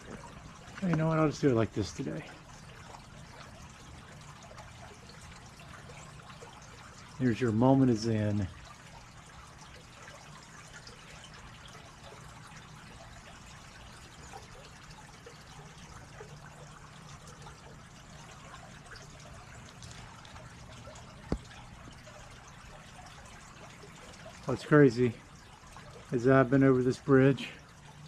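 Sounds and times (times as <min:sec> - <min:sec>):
creek water trickling: 0:00.0 - 0:28.0.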